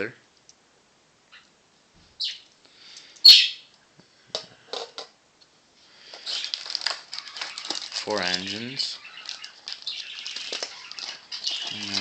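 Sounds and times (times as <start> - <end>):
plastic packaging crinkling: 6.0 - 12.0.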